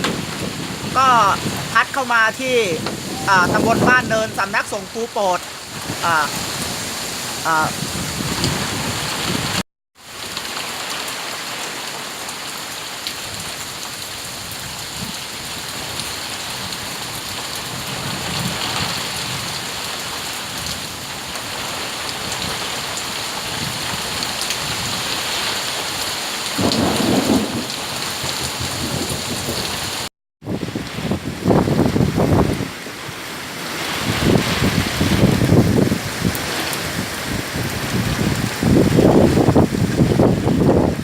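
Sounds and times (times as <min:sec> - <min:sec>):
rumbling thunder: 0:00.0 - 0:01.7, 0:26.6 - 0:32.6
heavy rain hissing: 0:00.0 - 0:09.6, 0:21.4 - 0:41.0.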